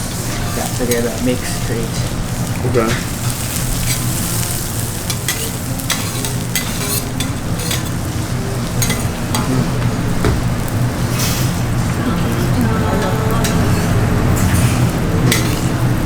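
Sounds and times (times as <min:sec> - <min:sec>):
utensils scraping griddle: 0:00.0 - 0:10.0, 0:10.8 - 0:16.0
food sizzling on a griddle: 0:00.0 - 0:16.0.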